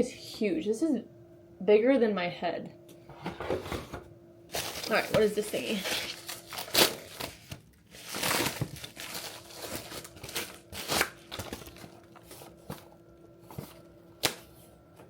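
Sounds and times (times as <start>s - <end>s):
crinkly packaging rustling: 4.5s - 14.6s.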